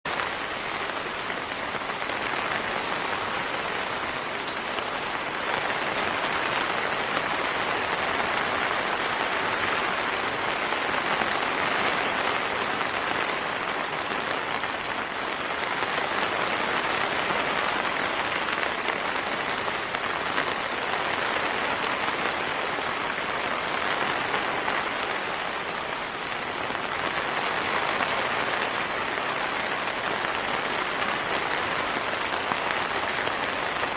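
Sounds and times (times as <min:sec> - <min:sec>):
heavy rain: 0:00.0 - 0:33.9.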